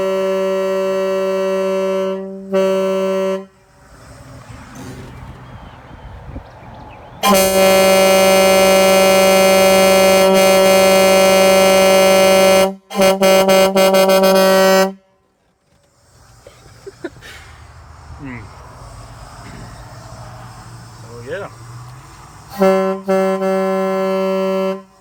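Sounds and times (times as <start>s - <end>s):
truck air horn chord: 0.0s - 3.8s, 7.2s - 15.3s, 22.5s - 25.0s.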